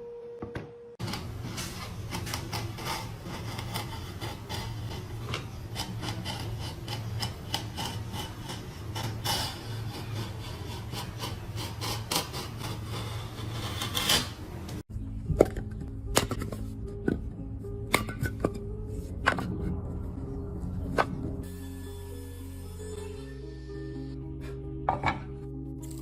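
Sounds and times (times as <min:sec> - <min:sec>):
tool scraping wood: 0:01.0 - 0:14.4.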